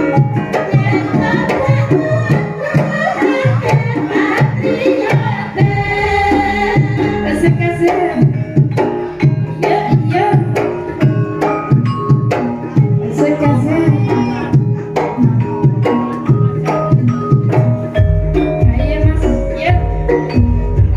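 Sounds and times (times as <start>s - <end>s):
metallophone and gong tones: 5.6s - 12.6s.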